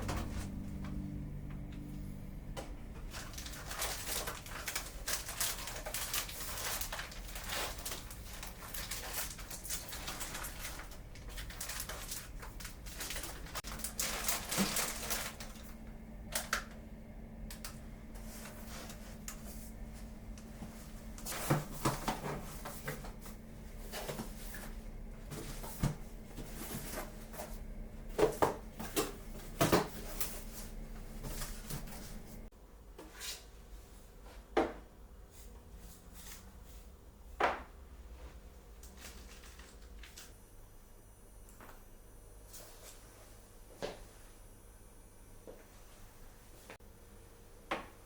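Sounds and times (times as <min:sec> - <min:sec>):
low steady hum: 0:00.0 - 0:32.9.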